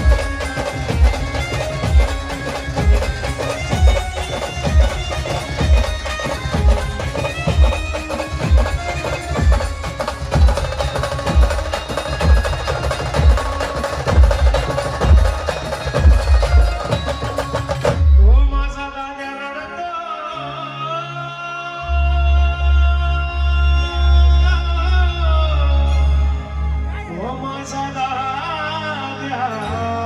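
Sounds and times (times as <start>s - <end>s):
bass drum beat: 0.0s - 18.8s.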